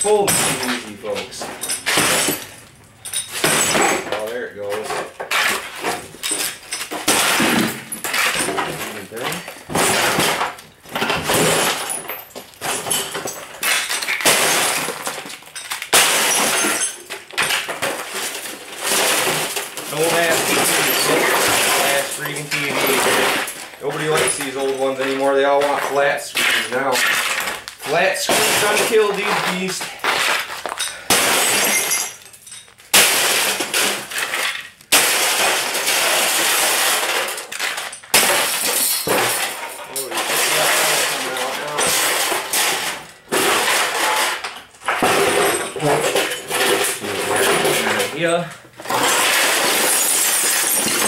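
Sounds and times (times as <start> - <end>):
glass shattering: 0.0 - 51.0
television being smashed: 0.0 - 51.0.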